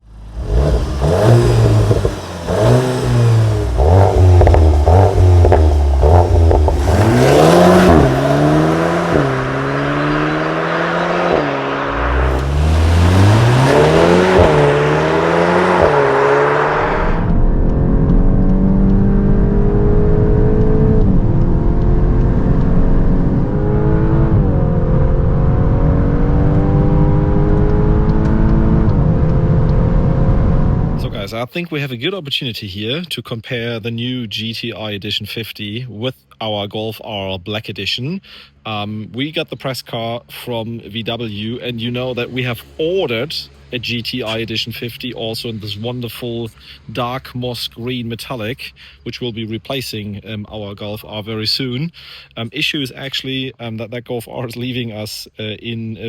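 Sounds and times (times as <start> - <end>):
car engine revving hard: 0.1 - 31.2
car accelerating with gear shifts: 0.1 - 31.3.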